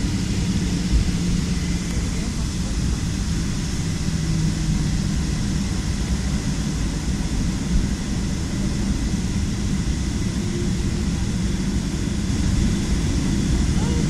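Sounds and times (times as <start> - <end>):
jet airliner cabin noise: 0.0 - 14.0.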